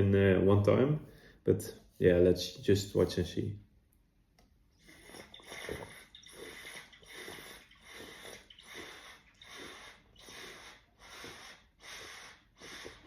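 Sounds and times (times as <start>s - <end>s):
man gulping water: 4.8s - 10.3s.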